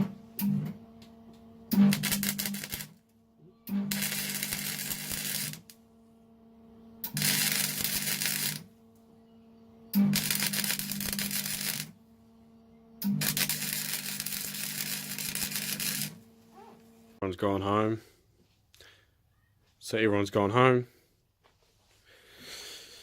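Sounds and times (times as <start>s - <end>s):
welder hum: 0.0s - 17.2s
welding crackling sizzle: 1.7s - 3.1s, 3.7s - 5.8s, 7.0s - 8.8s, 10.0s - 12.0s, 13.0s - 16.3s.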